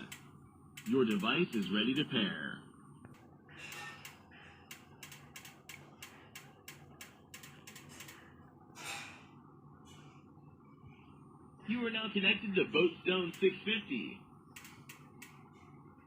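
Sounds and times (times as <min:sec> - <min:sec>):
faint evenly spaced clicks: 0:00.0 - 0:02.2, 0:03.0 - 0:08.4, 0:14.4 - 0:15.6.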